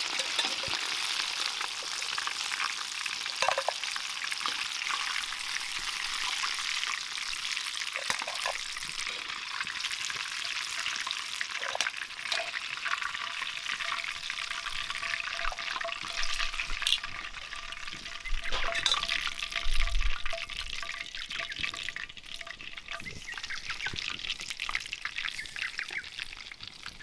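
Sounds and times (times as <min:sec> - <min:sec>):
utensils knocking against pot: 0:00.0 - 0:00.9, 0:03.4 - 0:03.8, 0:08.0 - 0:09.3, 0:11.6 - 0:17.0, 0:18.2 - 0:23.1
chicken frying in hot oil: 0:00.0 - 0:27.0.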